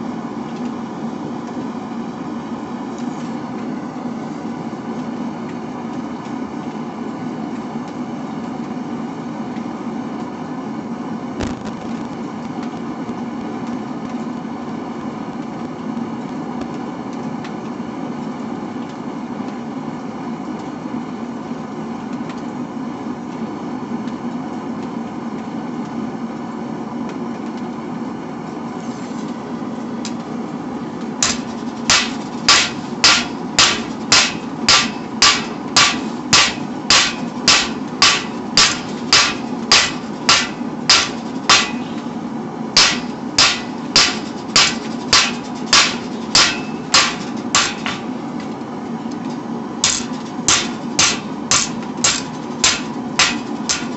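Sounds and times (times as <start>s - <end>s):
forge droning: 0.0s - 24.0s, 24.9s - 53.9s
hammer striking steel on anvil: 31.2s - 42.0s, 42.8s - 48.1s, 49.8s - 53.9s.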